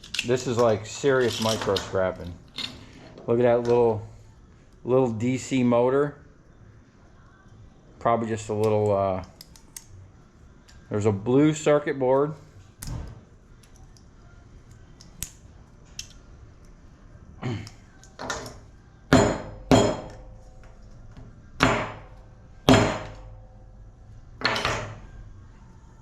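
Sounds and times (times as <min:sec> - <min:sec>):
hammer striking metal: 0:19.1 - 0:20.4, 0:21.6 - 0:23.4.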